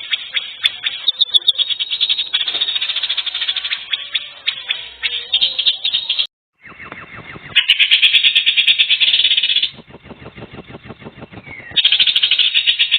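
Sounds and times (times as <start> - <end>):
animal trills: 0.0 - 6.3.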